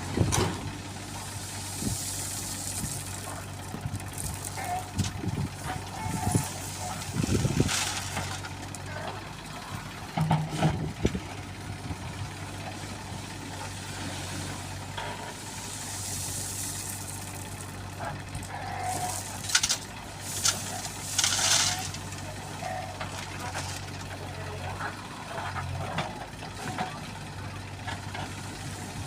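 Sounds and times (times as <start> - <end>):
diesel engine running: 0.0 - 29.0.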